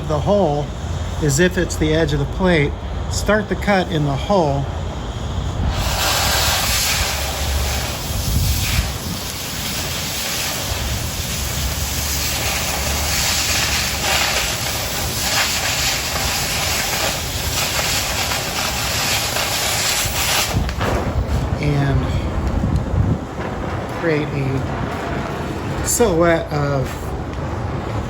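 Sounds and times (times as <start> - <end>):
cutting torch hissing: 0.0 - 28.0
torch crackles: 0.0 - 28.0.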